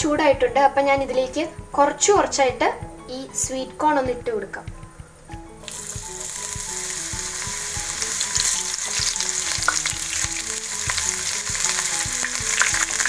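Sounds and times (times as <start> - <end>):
corn sizzling in hot oil: 5.6 - 13.0
crackles and pops: 5.6 - 13.0.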